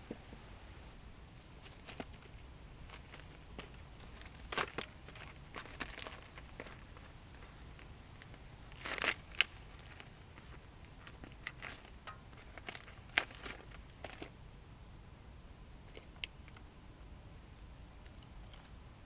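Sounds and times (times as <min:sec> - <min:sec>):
crinkling rustles: 0:01.3 - 0:14.4.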